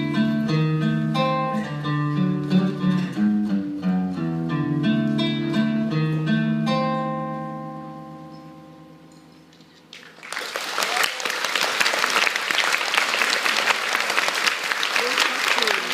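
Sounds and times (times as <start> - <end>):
guitar chord ringing: 0.0 - 9.9
audience applause: 9.9 - 15.9.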